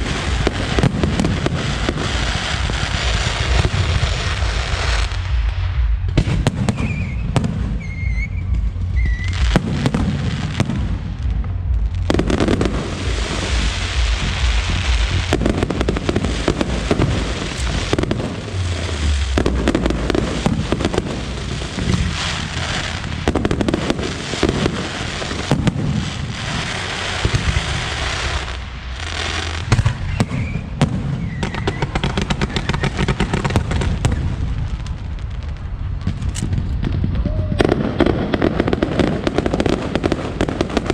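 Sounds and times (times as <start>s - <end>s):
fireworks whistles: 0.0s - 10.9s, 12.0s - 34.4s
deep booms of shell bursts: 0.0s - 26.3s
fireworks crackling and popping: 0.0s - 40.9s.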